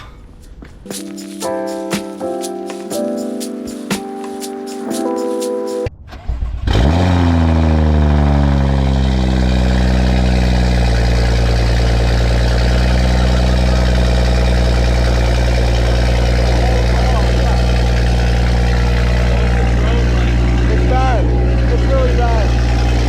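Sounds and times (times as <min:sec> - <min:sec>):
car engine cranking and starting: 0:06.0 - 0:23.0
loud engine idle: 0:07.4 - 0:23.0.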